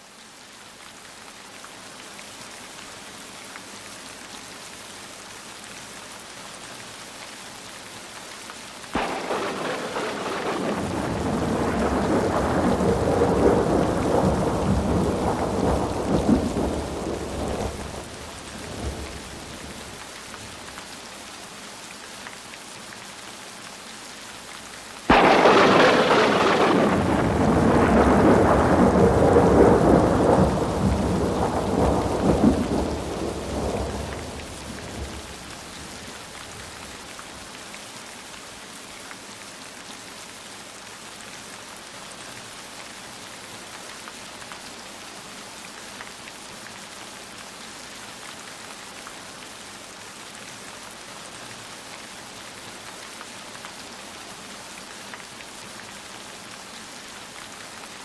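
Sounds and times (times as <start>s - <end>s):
heavy rain: 0.0s - 58.0s
thunder rolling: 9.0s - 20.8s, 25.1s - 37.2s.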